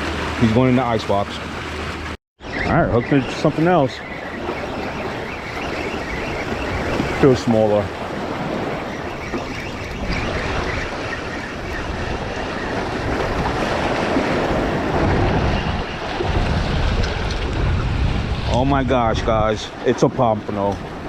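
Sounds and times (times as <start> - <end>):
surf and moving water: 0.0 - 21.0
wind buffeting microphone: 0.0 - 21.0.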